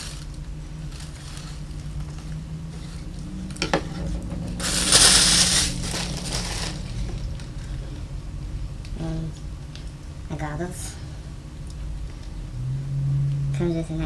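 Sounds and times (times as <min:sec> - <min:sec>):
packaging rustling: 0:00.0 - 0:03.1, 0:04.6 - 0:07.6
faint steady hum: 0:00.0 - 0:14.0.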